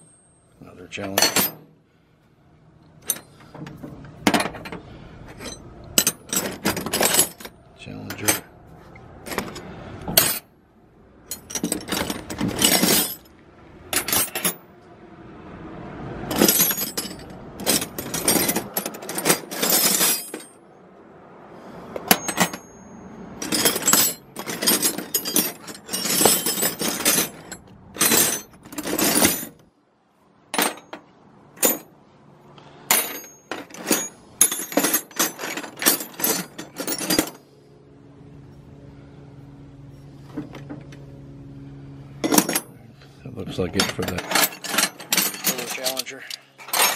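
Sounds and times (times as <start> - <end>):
metal wrenches clinking: 0.0 - 1.7, 3.0 - 8.5, 9.2 - 10.5, 11.2 - 13.3, 13.9 - 14.6, 16.3 - 20.6, 21.9 - 29.6, 30.5 - 31.9, 32.8 - 37.4, 42.2 - 42.8, 43.5 - 46.9.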